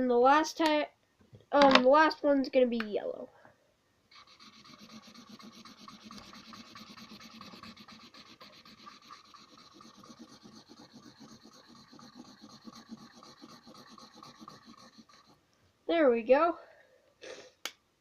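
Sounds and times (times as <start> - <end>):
marker scribbling on paper: 4.1 - 15.4.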